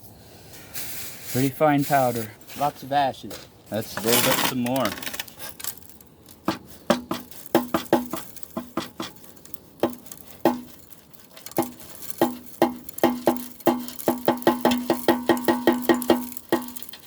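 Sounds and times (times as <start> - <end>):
metal crusher pounding ore: 3.9 - 5.9, 6.5 - 17.0.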